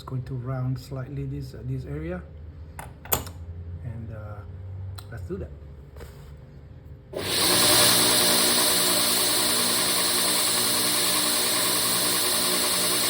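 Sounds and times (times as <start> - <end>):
electric grinder running: 7.2 - 13.0.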